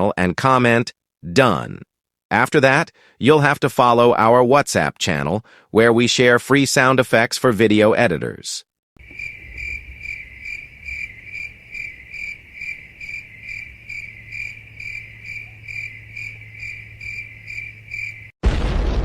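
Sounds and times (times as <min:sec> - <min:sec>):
cricket chirping: 0:09.0 - 0:18.4.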